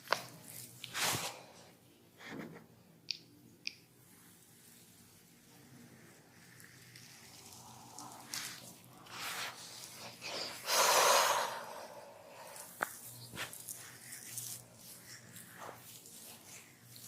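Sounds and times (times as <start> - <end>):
hands rubbing oiled skin: 6.5 - 17.0.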